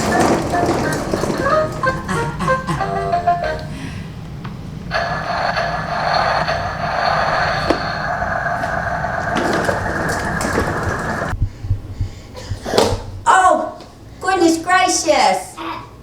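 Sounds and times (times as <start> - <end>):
ride-on toy rolling and whirring: 0.0 - 3.6, 4.9 - 11.4.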